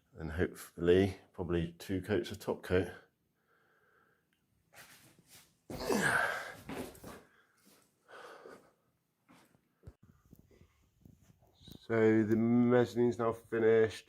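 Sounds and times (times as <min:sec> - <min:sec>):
person sneezing: 0:05.7 - 0:07.2.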